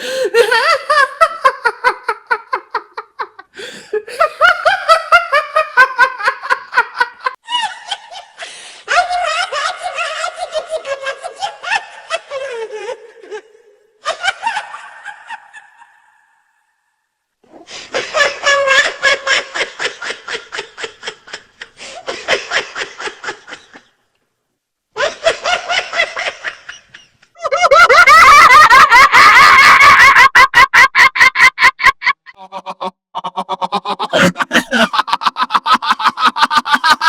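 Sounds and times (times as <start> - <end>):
witch cackling laugh: 0.0 - 16.4, 25.0 - 37.0.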